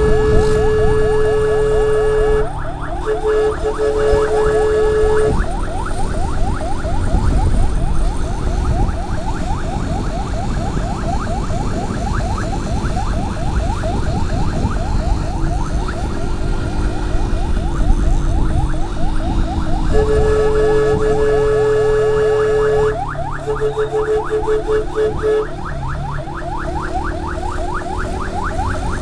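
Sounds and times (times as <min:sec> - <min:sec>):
short horn beeps: 0:00.0 - 0:02.5, 0:03.1 - 0:05.4, 0:19.9 - 0:25.5
horn blast: 0:00.0 - 0:05.6, 0:19.8 - 0:25.6
electronic siren yelping: 0:00.0 - 0:29.0
wind and engine rumble: 0:00.0 - 0:29.0.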